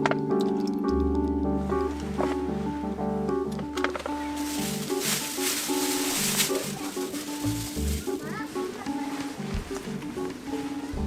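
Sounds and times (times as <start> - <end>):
keyboard melody: 0.0 - 11.0
low bass note: 0.8 - 4.4.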